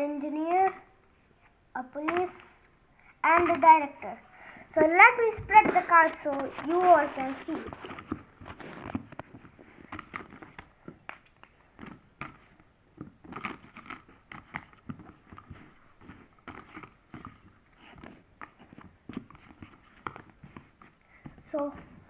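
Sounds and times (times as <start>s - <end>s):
cards tapping on a surface: 2.0s - 2.5s, 3.3s - 3.8s, 5.3s - 22.0s.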